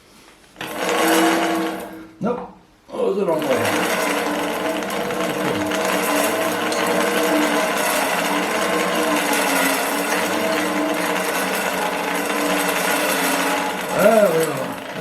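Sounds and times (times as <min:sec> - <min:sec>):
small electric motor humming: 0:03.4 - 0:15.0.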